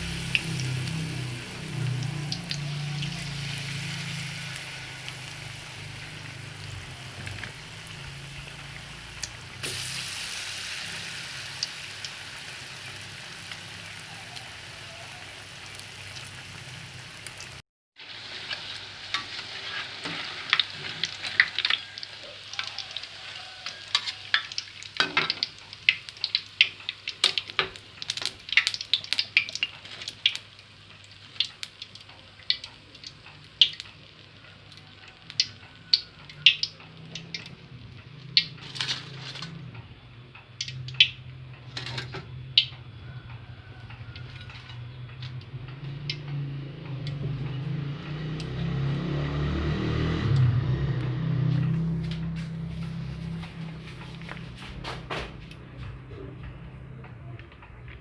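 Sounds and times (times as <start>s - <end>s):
food sizzling in hot oil: 0.0s - 39.7s, 40.5s - 54.4s
sharp oil crackles: 0.0s - 58.0s.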